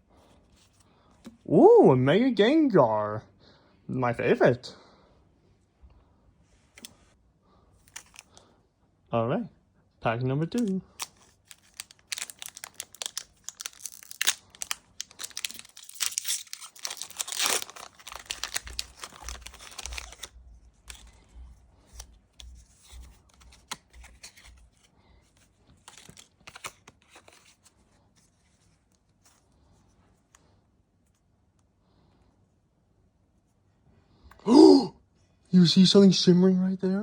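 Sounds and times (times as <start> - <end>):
foil pack tearing and crinkling: 10.6 - 21.2, 25.8 - 27.5.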